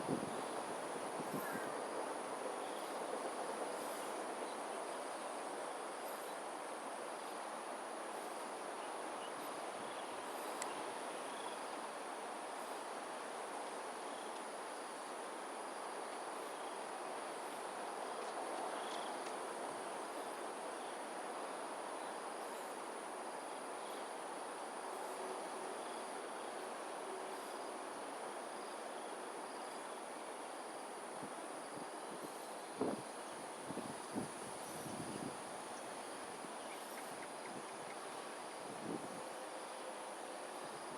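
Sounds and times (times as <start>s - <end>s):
crickets trilling: 0.0s - 40.9s.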